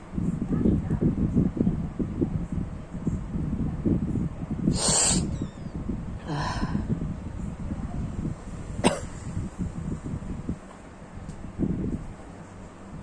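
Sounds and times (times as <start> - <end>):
person sneezing: 4.7 - 5.3
low rumbling noise: 6.0 - 7.4.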